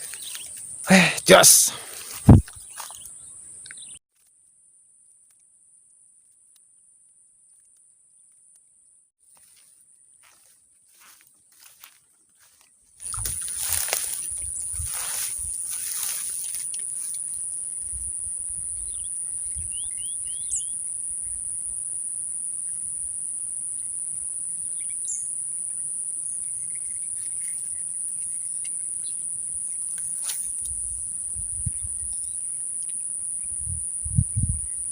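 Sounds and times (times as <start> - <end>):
insects droning: 0.0 - 3.9, 13.0 - 34.9
bird chirps: 18.8 - 20.8.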